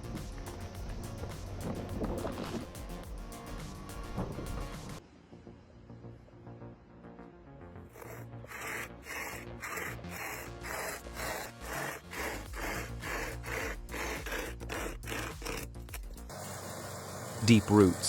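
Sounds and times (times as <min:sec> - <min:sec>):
saw rasping through wood: 0:08.0 - 0:16.3.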